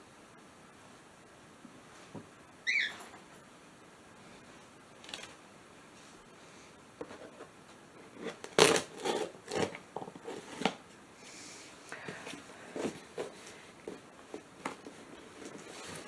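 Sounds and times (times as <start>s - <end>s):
cardboard rustling: 7.0s - 10.8s, 12.0s - 16.0s
cardboard scraping and tearing: 8.0s - 10.8s, 12.7s - 16.0s.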